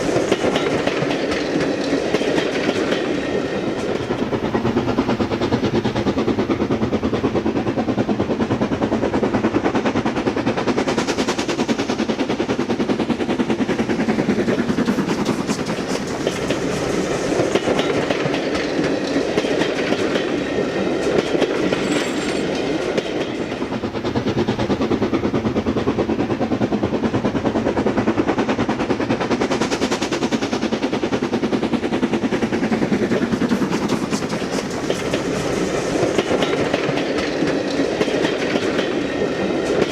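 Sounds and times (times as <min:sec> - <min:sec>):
model train wheels clattering: 0:10.7 - 0:25.8, 0:28.5 - 0:39.9.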